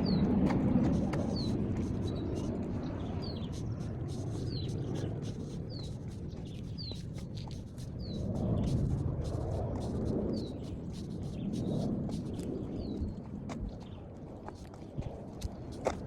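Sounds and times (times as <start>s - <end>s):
small bird chirping: 0.0s - 0.3s, 1.1s - 13.1s.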